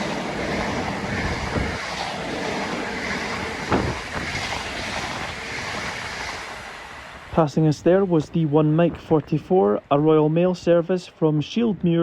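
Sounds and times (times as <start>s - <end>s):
train wheels rumbling on rails: 0.0s - 7.5s.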